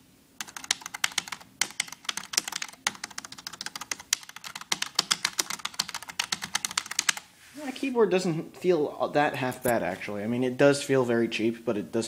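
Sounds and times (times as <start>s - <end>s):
fast keyboard typing: 0.4s - 7.2s.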